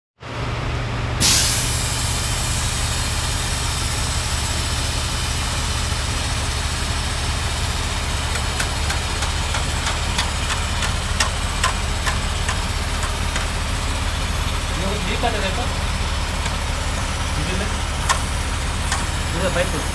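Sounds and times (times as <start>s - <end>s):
diesel engine idling: 0.2s - 19.9s
burst of hissing: 1.2s - 3.0s
sharp clicks: 18.0s - 19.1s.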